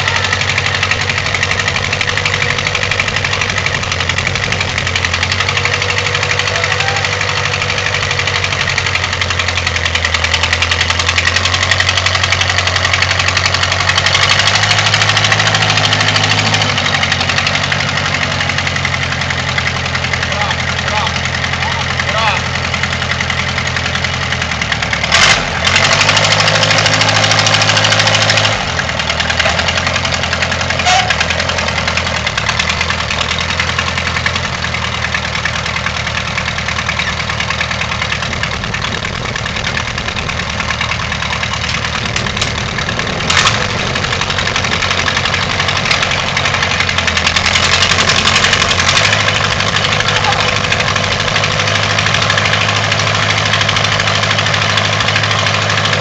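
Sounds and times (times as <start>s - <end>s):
backhoe engine idling: 0.0s - 56.0s
sharp clacks: 40.6s - 56.0s.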